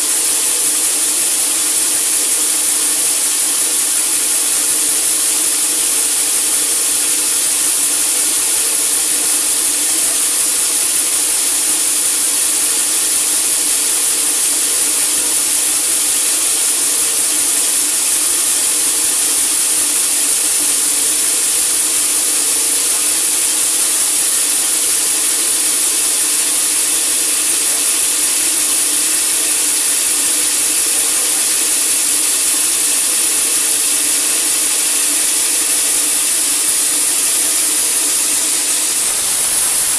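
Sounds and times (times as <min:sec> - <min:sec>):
sawmill saw cutting log: 0:22.5 - 0:39.9.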